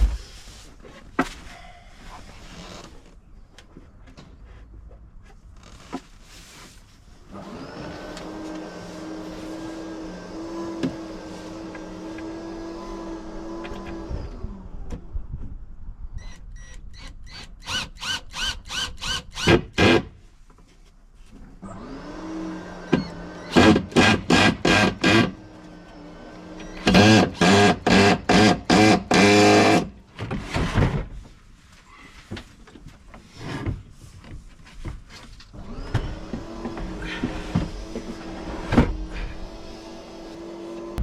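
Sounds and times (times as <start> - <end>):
power tool motor running in pulses: 21.7 - 29.9, 35.6 - 41.0.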